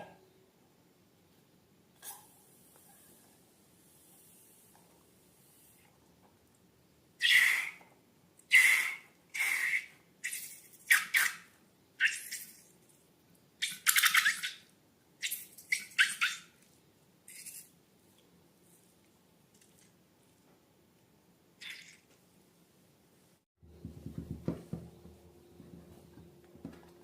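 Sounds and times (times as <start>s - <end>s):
slime squishing and squeaking: 8.5s - 12.7s.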